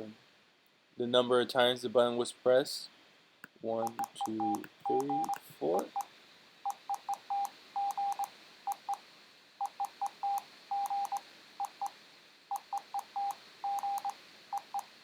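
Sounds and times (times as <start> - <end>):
morse code beeps from phone: 6.9 - 9.0, 9.6 - 11.9, 12.5 - 14.9.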